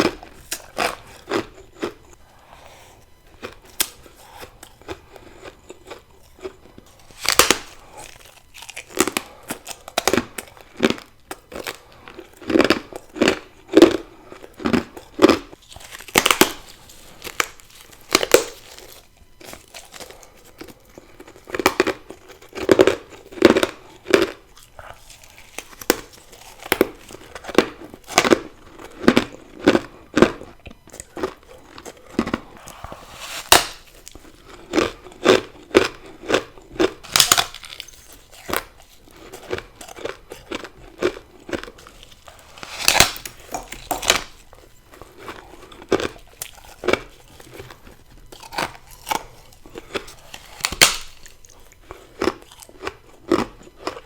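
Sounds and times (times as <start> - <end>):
ice being crunched and chewed: 0.0 - 54.0.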